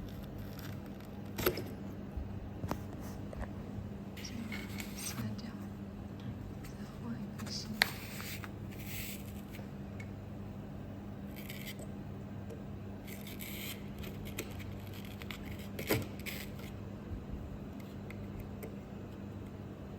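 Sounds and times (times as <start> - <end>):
steady low hum: 0.0 - 19.9
scraping and rustling handling noises: 4.2 - 5.7, 6.6 - 9.7.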